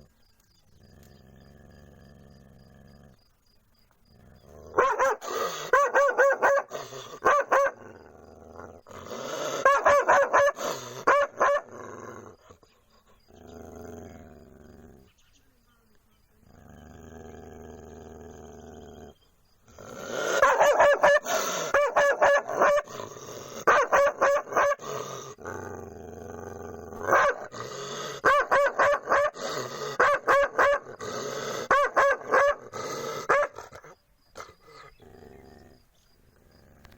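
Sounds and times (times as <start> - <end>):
dog barking: 4.7 - 7.8, 9.4 - 11.7, 20.2 - 23.0, 23.6 - 24.8, 27.0 - 27.5, 28.2 - 31.0, 31.6 - 34.5.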